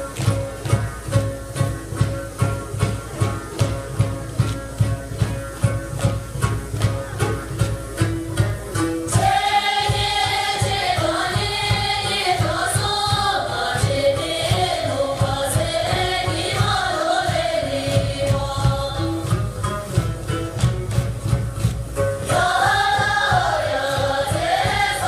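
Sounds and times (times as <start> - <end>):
steady low beat: 0.0 - 25.0
group singing in unison: 9.1 - 19.6, 22.2 - 25.0.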